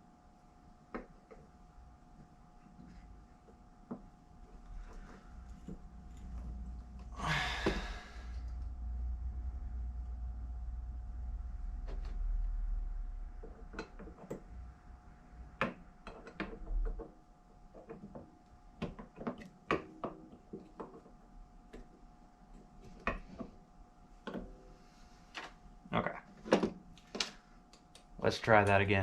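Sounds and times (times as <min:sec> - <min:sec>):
faint steady hum: 0:00.0 - 0:29.0
low rumble: 0:05.9 - 0:13.4.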